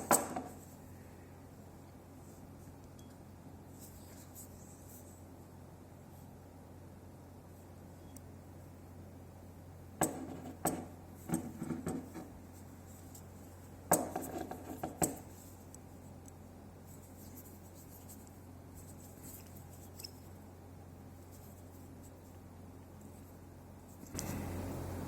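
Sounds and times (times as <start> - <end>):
steady low hum: 0.0 - 25.0
metal part clinking and scraping: 19.0 - 20.4.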